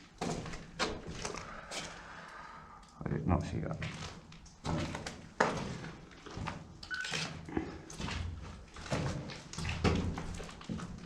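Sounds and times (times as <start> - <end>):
people scuffing and knocking: 3.8 - 11.0.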